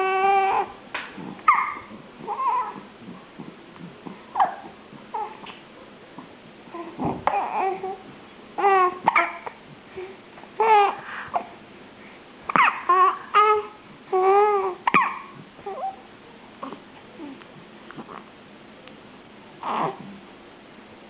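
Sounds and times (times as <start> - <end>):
baby squeaking or cooing: 1.5 - 2.8, 8.6 - 9.5, 12.5 - 16.0
baby hiccupping: 8.6 - 9.6, 12.5 - 16.0.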